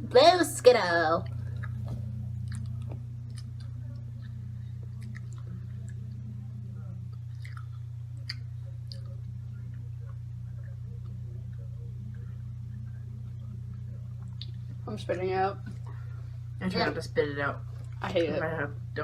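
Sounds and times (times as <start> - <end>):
steady low hum: 0.0 - 19.0
person chewing candy: 2.4 - 4.0, 4.8 - 6.0, 7.1 - 9.2.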